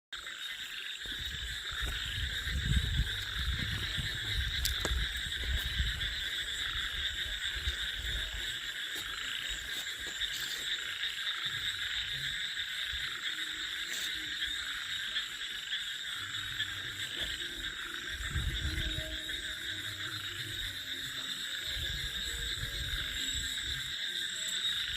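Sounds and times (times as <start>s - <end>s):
frogs and insects trilling: 0.2s - 24.9s
low rumble: 1.3s - 8.4s.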